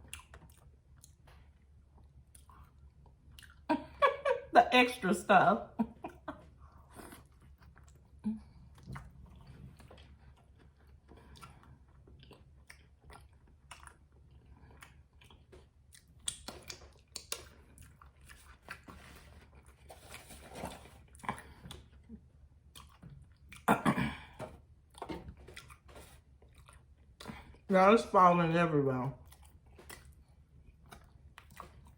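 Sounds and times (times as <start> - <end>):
close-miked chewing: 0.0 - 3.8, 6.0 - 27.7, 29.1 - 31.9
lip smacks: 14.7 - 19.0, 29.2 - 31.9.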